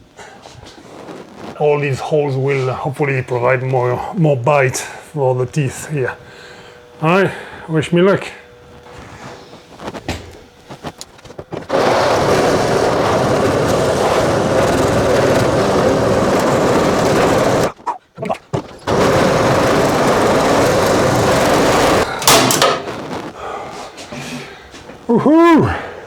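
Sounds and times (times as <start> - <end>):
drill cutting steel: 11.7 - 17.8, 18.8 - 22.7.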